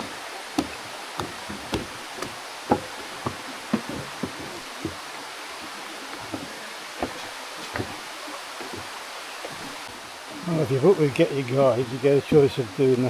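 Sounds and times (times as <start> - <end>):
footsteps going down steps: 0.0 - 10.0
waterfall rushing: 0.0 - 13.0.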